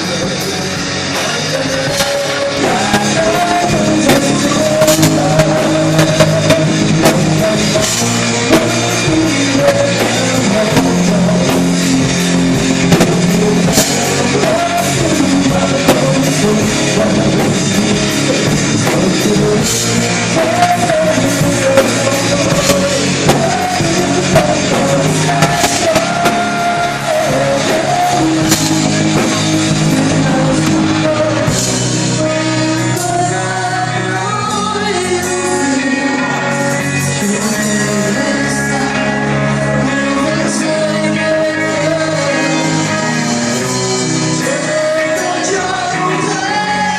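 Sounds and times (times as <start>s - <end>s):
rock song with singer and band: 0.0s - 46.9s.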